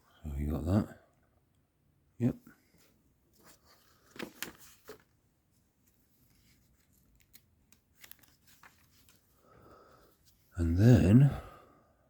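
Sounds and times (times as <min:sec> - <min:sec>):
rustling: 0:02.7 - 0:09.5.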